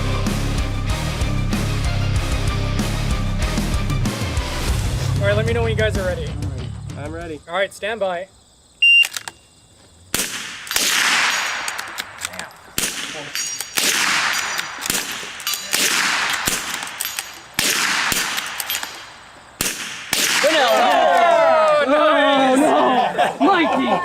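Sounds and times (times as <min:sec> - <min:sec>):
rifle shots: 0:10.1 - 0:21.0
steel plates ringing: 0:13.2 - 0:15.8.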